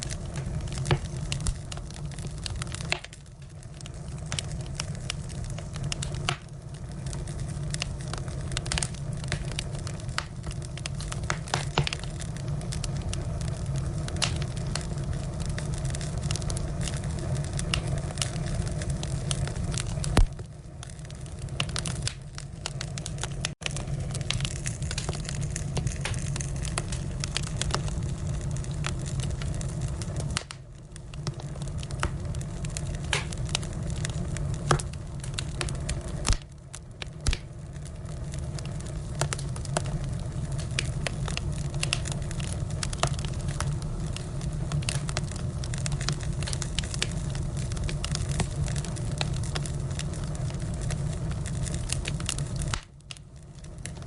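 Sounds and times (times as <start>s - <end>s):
firewood crackling and popping: 0.0s - 54.0s
low fire rumble: 0.0s - 54.0s.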